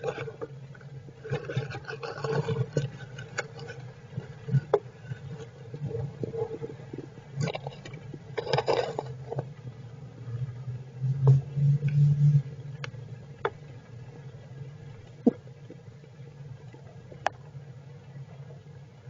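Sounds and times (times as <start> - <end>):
low rumble: 9.4 - 16.0.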